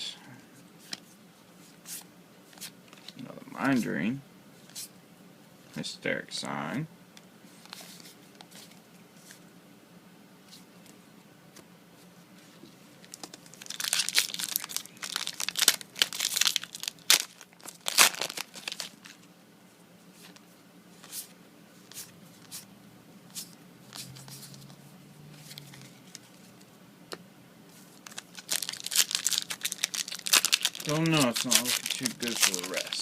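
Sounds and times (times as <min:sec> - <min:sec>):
foil wrapper crinkling and tearing: 0:13.0 - 0:19.2, 0:28.0 - 0:33.0.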